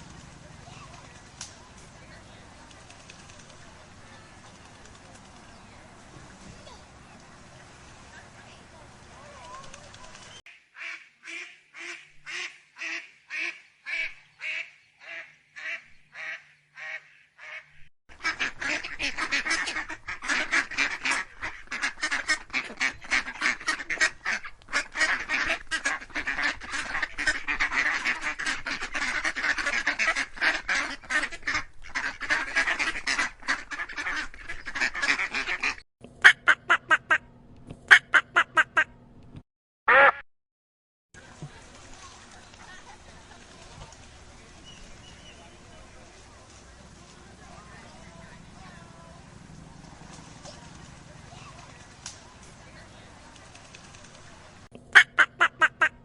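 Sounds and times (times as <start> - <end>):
single duck quacking: 10.8 - 37.3, 39.9 - 40.2, 54.9 - 56.0
many ducks quacking: 18.2 - 37.2.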